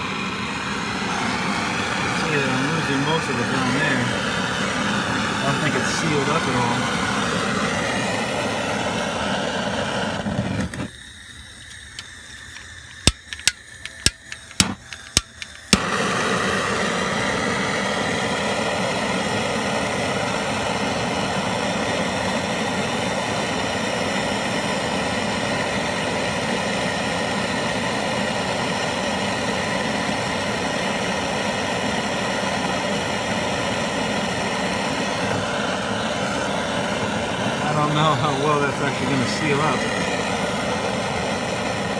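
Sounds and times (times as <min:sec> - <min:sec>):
torch flame hissing: 0:00.0 - 0:41.9
trigger igniter clicks: 0:10.4 - 0:16.2.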